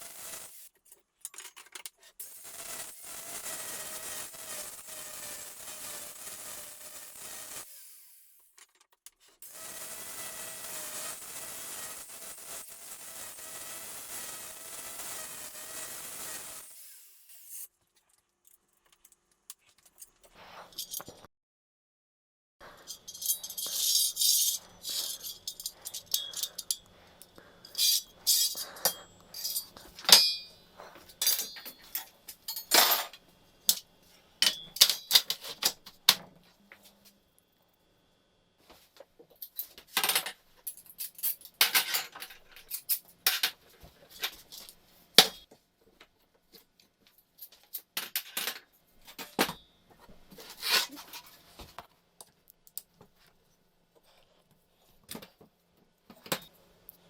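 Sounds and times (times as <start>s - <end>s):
metal parts clinking: 0.8s - 2.1s, 18.4s - 21.2s, 22.9s - 26.9s, 27.6s - 30.5s.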